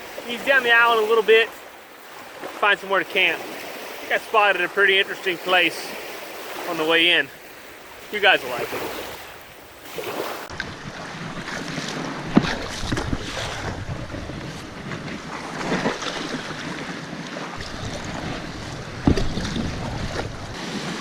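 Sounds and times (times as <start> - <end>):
waves washing: 0.0 - 21.0
wind buffeting microphone: 7.5 - 21.0.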